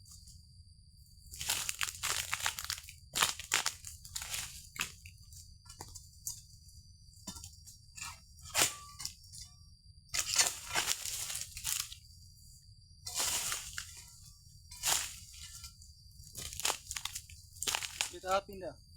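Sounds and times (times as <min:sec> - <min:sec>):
fronds tearing and crunching: 0:01.4 - 0:04.9, 0:16.4 - 0:18.4.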